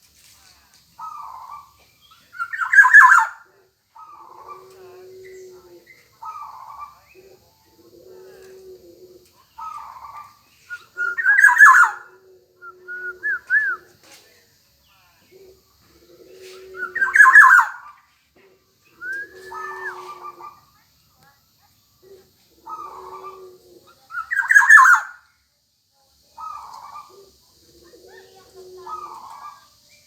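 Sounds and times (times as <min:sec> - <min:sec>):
bird harsh squawks: 0:01.0 - 0:03.4, 0:09.6 - 0:12.1, 0:16.8 - 0:18.0, 0:24.1 - 0:25.2
low steady bird note: 0:01.0 - 0:25.5, 0:26.2 - 0:30.0
bird fluty whistled notes: 0:12.6 - 0:13.9.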